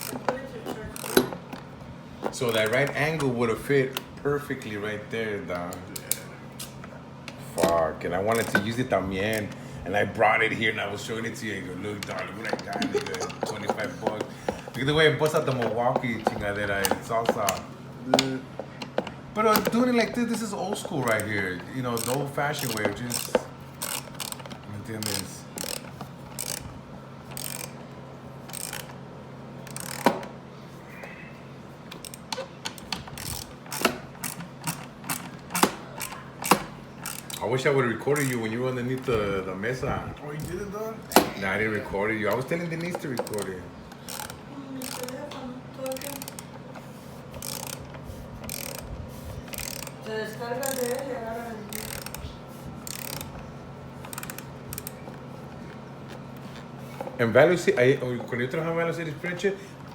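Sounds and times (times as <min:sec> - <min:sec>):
hand ratchet clicking: 0:00.0 - 0:01.6, 0:02.3 - 0:03.3, 0:07.6 - 0:09.6, 0:12.0 - 0:27.8, 0:28.4 - 0:29.0, 0:29.6 - 0:30.2, 0:31.9 - 0:37.5, 0:38.1 - 0:38.5, 0:42.3 - 0:51.1, 0:51.7 - 0:53.4, 0:54.0 - 0:55.2
steady low hum: 0:00.0 - 0:59.9
person speaking: 0:07.4 - 0:23.5, 0:50.0 - 0:53.3.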